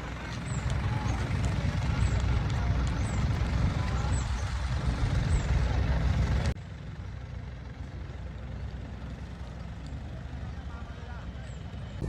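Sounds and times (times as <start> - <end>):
moving vehicle rumble: 0.0 - 12.0.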